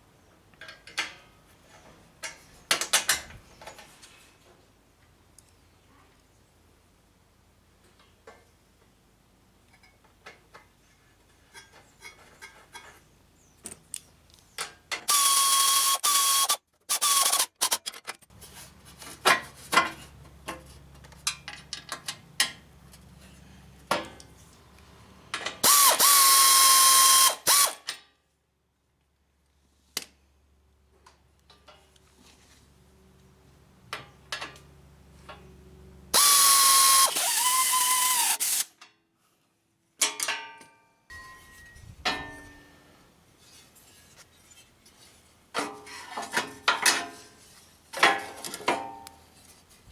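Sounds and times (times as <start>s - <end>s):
power tool motor running: 15.1s - 17.7s, 25.6s - 27.8s, 36.2s - 38.7s.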